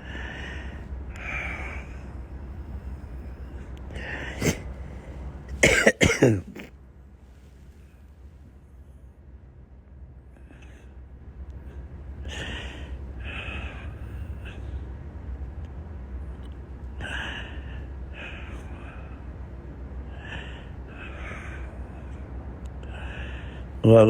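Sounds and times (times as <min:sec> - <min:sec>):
man breathing heavily: 0:00.0 - 0:06.7, 0:10.4 - 0:11.0, 0:11.8 - 0:15.0, 0:16.9 - 0:23.8
steady low hum: 0:00.0 - 0:24.0.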